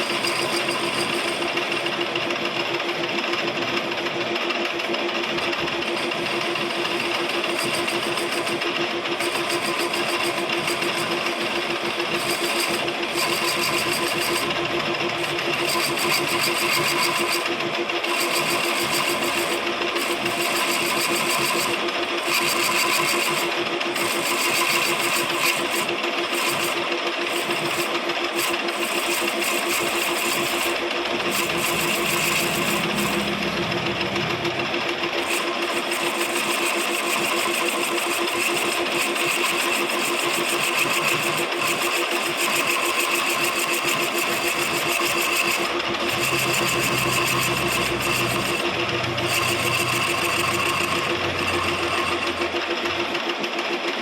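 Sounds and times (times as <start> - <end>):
lathe humming: 0.0 - 54.0.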